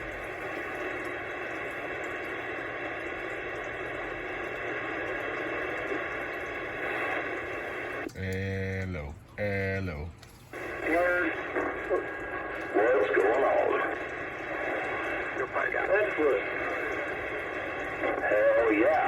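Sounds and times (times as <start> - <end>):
radio static hiss: 0.0 - 19.0
man's voice over radio: 8.0 - 19.0.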